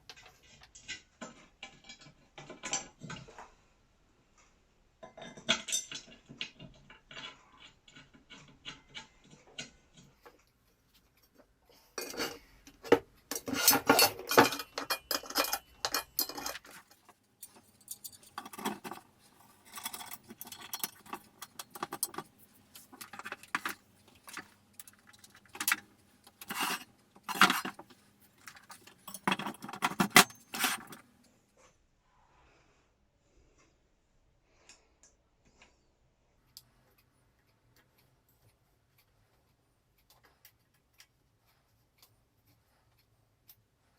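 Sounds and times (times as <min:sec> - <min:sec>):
small metal parts clinking: 0:12.0 - 0:31.0.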